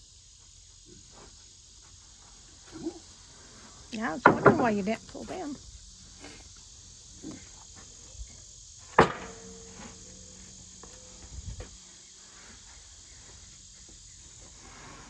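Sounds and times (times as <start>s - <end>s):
insects chirring: 0.0s - 15.0s
dull thumps: 3.9s - 5.6s, 8.9s - 11.8s
sharp metallic clank: 8.9s - 11.4s.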